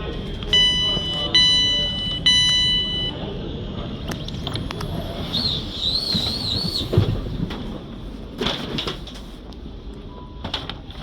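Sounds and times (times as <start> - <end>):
train rumble: 0.0 - 11.0
train door warning beeps: 0.5 - 3.2.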